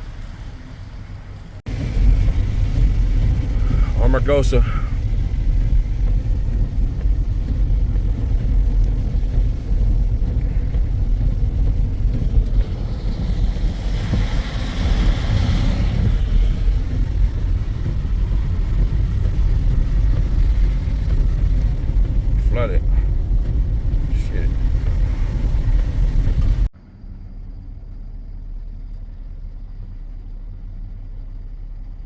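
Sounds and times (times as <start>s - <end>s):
car driving rumble: 0.0s - 32.0s.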